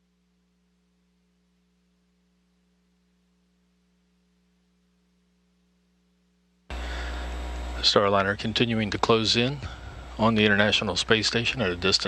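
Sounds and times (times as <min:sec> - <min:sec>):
faint electrical hum: 0:00.0 - 0:12.0.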